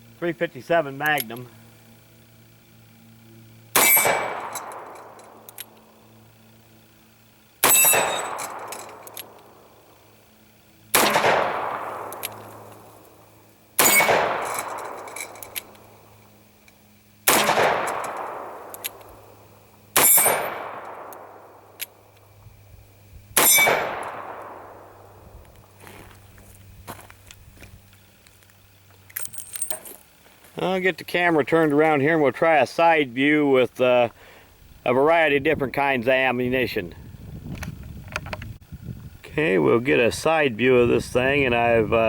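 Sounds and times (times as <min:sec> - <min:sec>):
revolver shots echoing: 0:07.6 - 0:09.4, 0:10.9 - 0:12.8, 0:13.8 - 0:15.1, 0:17.3 - 0:19.0, 0:20.0 - 0:21.7.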